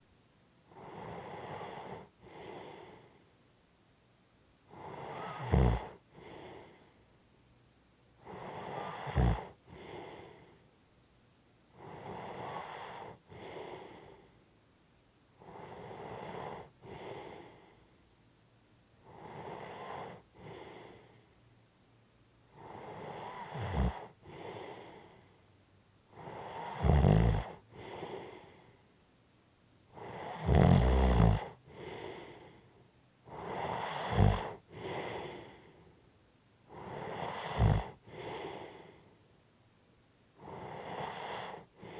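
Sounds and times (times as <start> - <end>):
person breathing heavily: 1.9 - 3.3, 6.1 - 7.0, 9.7 - 10.7, 13.2 - 14.4, 16.7 - 18.0, 20.2 - 21.3, 24.2 - 25.4, 27.7 - 28.8, 31.6 - 36.0, 37.8 - 39.2, 41.5 - 41.9
person snoring: 4.7 - 6.8, 8.2 - 10.5, 11.8 - 14.3, 15.4 - 17.8, 19.1 - 21.2, 22.6 - 25.2, 26.2 - 28.6, 30.0 - 32.6, 33.3 - 35.8, 36.7 - 39.0, 40.4 - 41.9.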